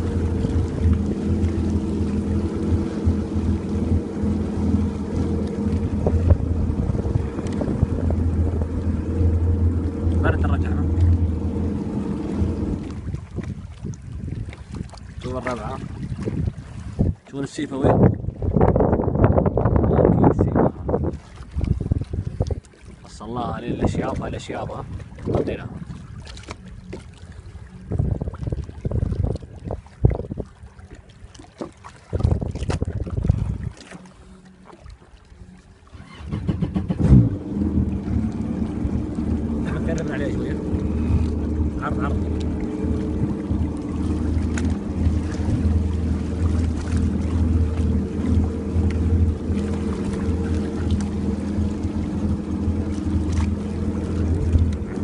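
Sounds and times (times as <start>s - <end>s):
faint motor hum: 0.0s - 13.4s, 37.3s - 55.0s
wind buffeting microphone: 0.0s - 33.8s, 36.0s - 55.0s
water noise: 0.0s - 55.0s.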